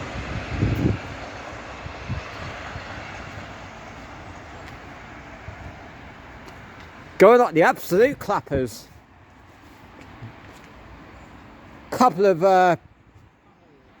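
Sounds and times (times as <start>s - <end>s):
wind buffeting microphone: 0.0s - 7.2s
diesel train rumble: 0.0s - 12.8s.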